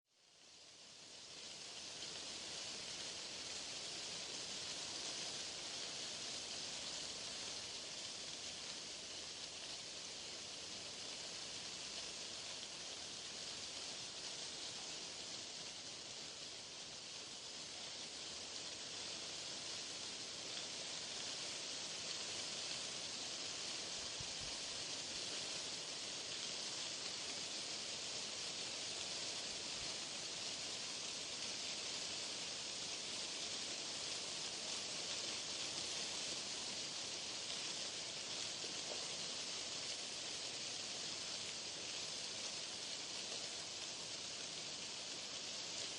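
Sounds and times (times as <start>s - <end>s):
white noise hiss: 0.1s - 45.9s.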